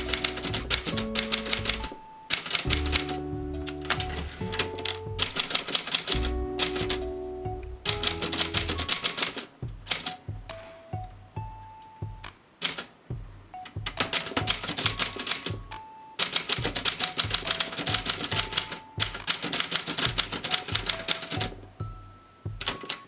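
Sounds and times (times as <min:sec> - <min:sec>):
typewriter keystrokes clacking: 0:00.0 - 0:07.1, 0:07.9 - 0:10.2, 0:12.6 - 0:12.9, 0:13.8 - 0:21.6, 0:22.6 - 0:23.0
background music simple melody: 0:00.0 - 0:23.0.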